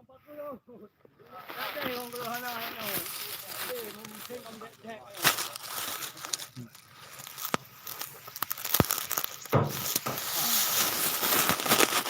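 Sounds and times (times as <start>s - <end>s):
rice straw crackling and rustling: 1.3s - 12.0s
sharp knock: 9.6s - 10.2s.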